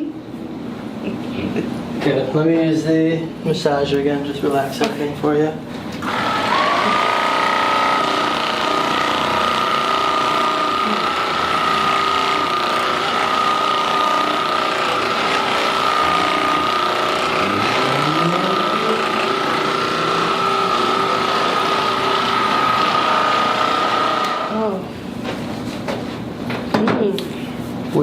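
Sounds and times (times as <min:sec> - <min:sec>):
massage gun whining and buzzing: 0:06.0 - 0:24.9.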